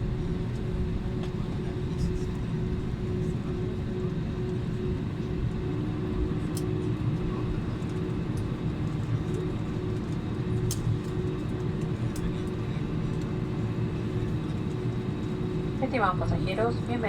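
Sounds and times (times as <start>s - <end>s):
airplane cabin rumble: 0.0s - 17.0s
light clicks: 10.6s - 11.1s.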